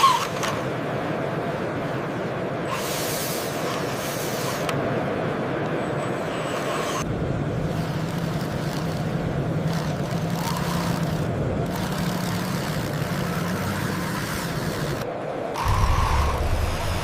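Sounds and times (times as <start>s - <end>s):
model vehicle engine drone: 6.1s - 17.0s.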